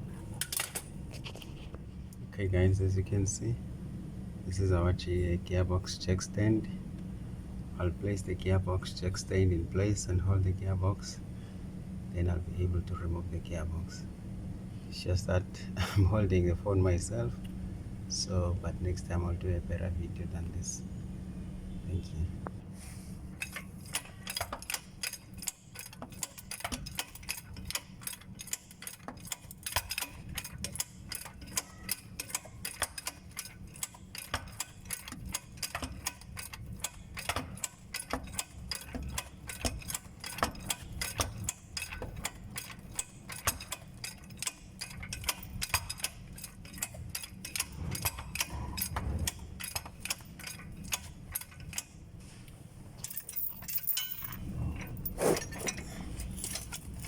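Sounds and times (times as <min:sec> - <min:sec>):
sharp metallic ratchet clicks: 0:23.4 - 0:51.9.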